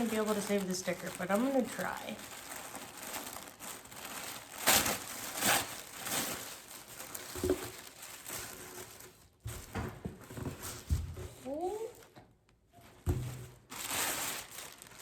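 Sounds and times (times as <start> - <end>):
tissue paper crinkling: 0.0 - 9.6, 13.4 - 15.0.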